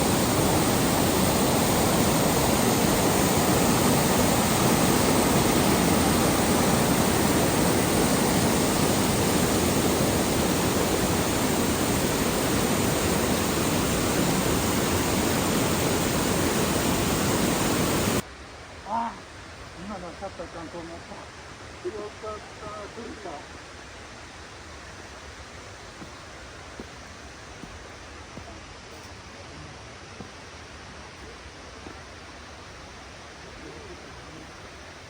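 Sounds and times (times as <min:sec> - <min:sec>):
fast-flowing water rushing: 0:00.0 - 0:18.2.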